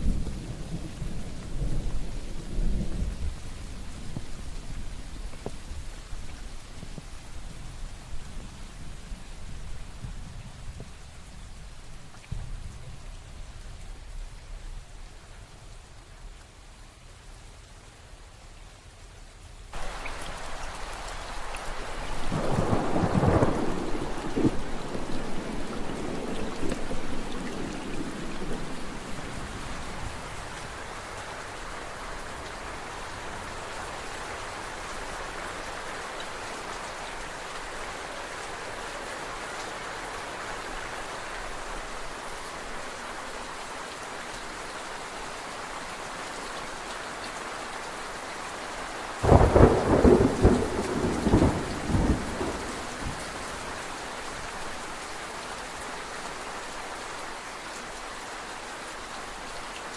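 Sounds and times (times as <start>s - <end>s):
steady rain falling: 0.0s - 59.9s
thunder rumbling: 19.8s - 30.8s, 49.2s - 53.8s
loud thunderclap: 22.1s - 30.2s, 49.2s - 53.3s.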